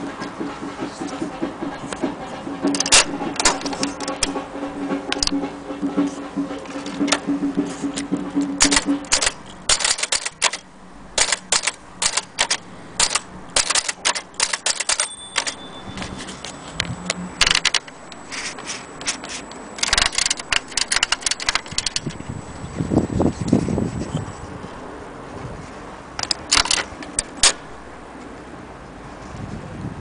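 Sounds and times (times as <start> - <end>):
typewriter keys clicking: 2.6 - 4.4, 5.1 - 5.4, 7.8 - 16.5, 17.4 - 22.2, 26.2 - 27.8.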